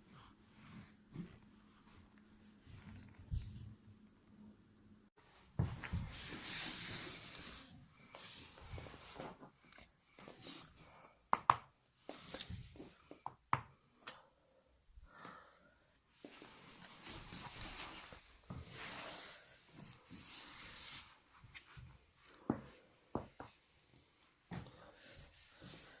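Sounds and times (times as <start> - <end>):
soft rubbing: 0.0 - 4.0, 16.2 - 22.2.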